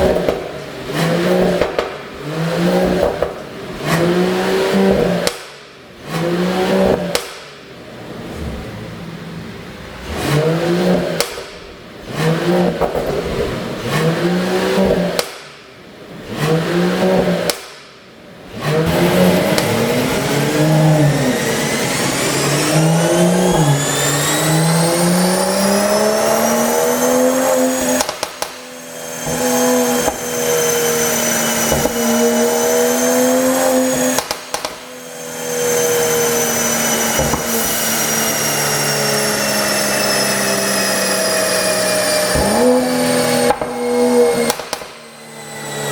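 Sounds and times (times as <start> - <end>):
exhaust pops: 0.0 - 4.1, 4.8 - 7.7, 11.0 - 14.1, 14.7 - 18.8, 19.4 - 19.8, 27.8 - 30.3, 31.6 - 32.2, 33.6 - 34.9, 42.3 - 45.1
car engine revving: 0.0 - 45.9.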